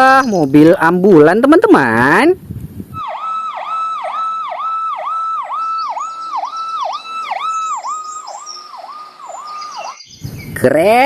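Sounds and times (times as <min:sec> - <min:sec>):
toy ambulance siren: 0:03.0 - 0:10.0.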